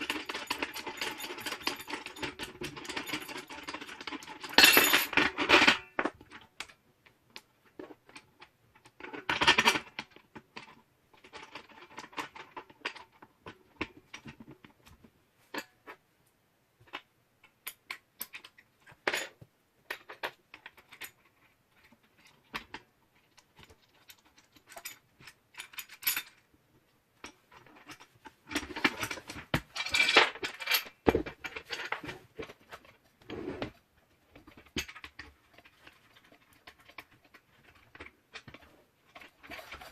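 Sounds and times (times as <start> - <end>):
metal parts rattling: 0.0 - 5.5, 23.3 - 26.4, 27.5 - 33.0, 34.4 - 39.9
metal parts clicking and clinking: 0.0 - 6.8, 16.9 - 26.5, 27.2 - 33.0, 34.3 - 39.9.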